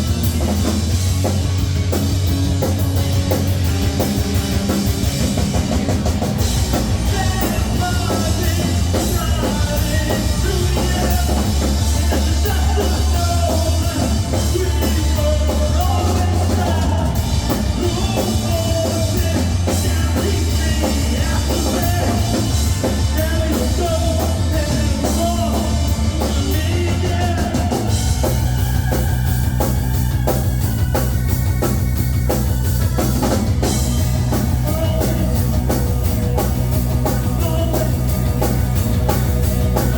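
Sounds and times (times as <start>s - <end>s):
rock band playing live: 0.0s - 39.9s
person singing: 6.9s - 28.3s, 34.3s - 35.8s, 36.4s - 38.6s.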